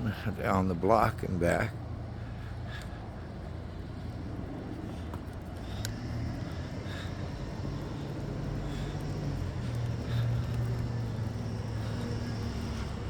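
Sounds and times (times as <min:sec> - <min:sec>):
vehicle engine rumble: 0:00.0 - 0:13.0.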